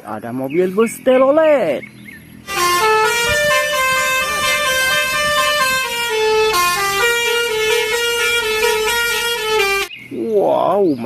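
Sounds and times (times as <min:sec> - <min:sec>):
multi-tone bus horn tune: 0:02.4 - 0:09.9.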